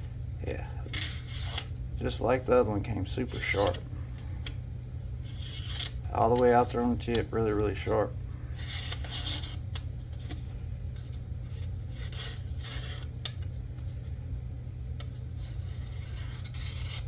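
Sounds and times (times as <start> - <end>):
knife blade scraping: 0.8 - 1.8, 3.2 - 3.8, 5.2 - 7.9, 8.5 - 10.4, 11.0 - 13.9, 15.1 - 17.0.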